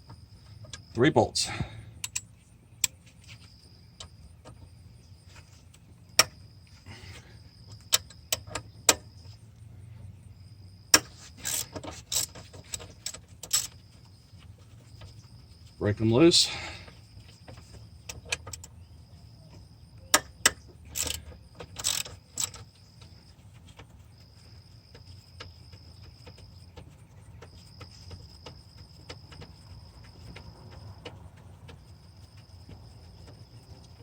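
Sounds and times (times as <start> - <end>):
sharp metal clicks and knocks: 7.7 - 9.1, 10.9 - 13.8, 17.4 - 18.8, 20.0 - 24.0
ratchet wrench ticking: 20.2 - 22.6.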